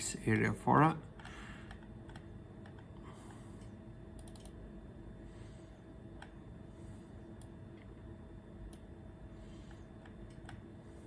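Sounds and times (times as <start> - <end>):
steady low hum: 0.0 - 11.0
keyboard and mouse clicks: 1.2 - 2.9, 4.2 - 4.6.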